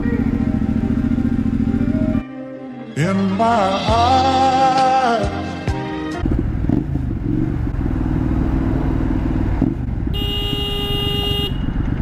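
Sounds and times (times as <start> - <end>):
motorcycle engine running: 0.0 - 2.2, 6.2 - 12.0
vehicle horn blast: 10.1 - 11.8.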